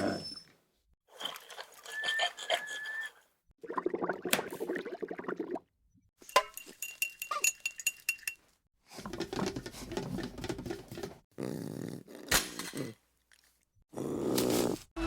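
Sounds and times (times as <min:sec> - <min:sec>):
dishes and utensils clinking: 0:06.2 - 0:11.1.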